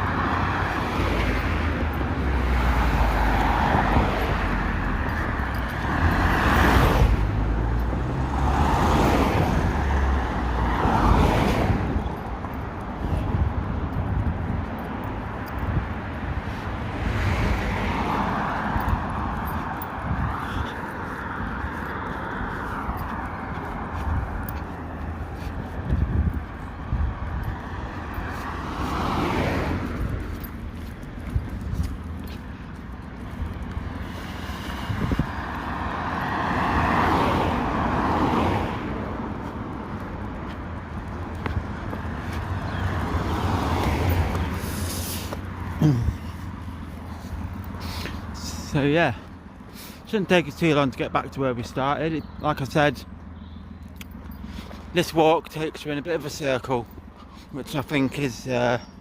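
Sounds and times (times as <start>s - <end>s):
wind buffeting microphone: 0.0s - 34.1s, 34.7s - 44.8s.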